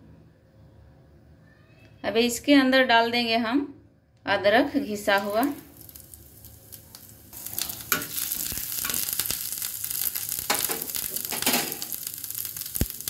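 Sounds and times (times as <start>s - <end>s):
ginger sizzling in hot fat: 4.8s - 13.0s.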